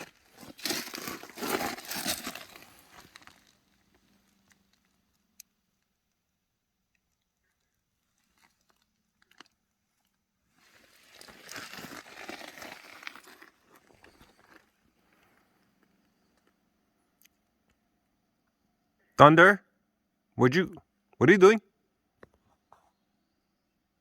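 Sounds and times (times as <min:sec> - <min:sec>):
crunching and crinkling: 0:00.0 - 0:05.5, 0:06.9 - 0:16.6.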